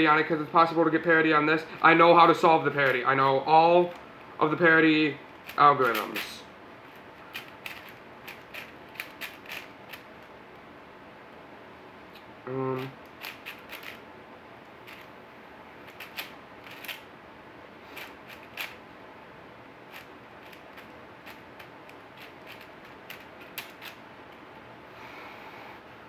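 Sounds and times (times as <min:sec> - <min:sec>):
puzzle cube clicking: 0:05.4 - 0:06.3, 0:06.9 - 0:10.2, 0:12.8 - 0:14.0, 0:15.9 - 0:17.0, 0:18.0 - 0:18.8, 0:19.9 - 0:24.0.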